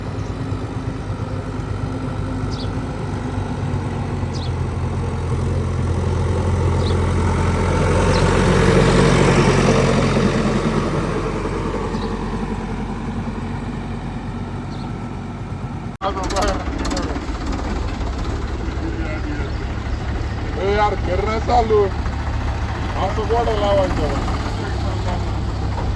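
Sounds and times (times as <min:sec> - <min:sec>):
diesel engine running: 0:00.0 - 0:25.9.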